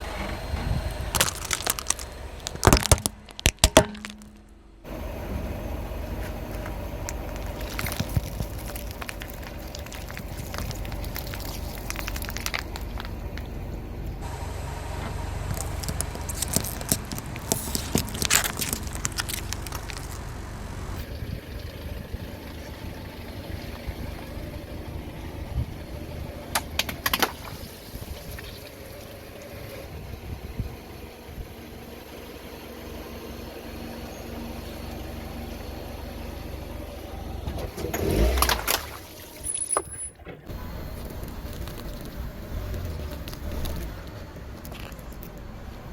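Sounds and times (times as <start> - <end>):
car engine running: 0.0 - 45.9
tyre crushing objects: 1.1 - 4.5, 15.5 - 20.4.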